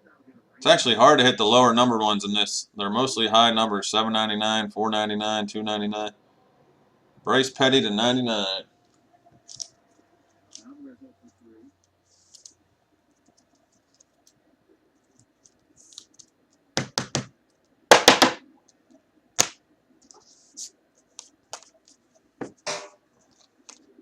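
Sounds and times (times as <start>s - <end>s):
hands handling trading cards: 9.4s - 10.7s, 11.8s - 12.6s, 15.0s - 18.0s, 19.4s - 24.0s.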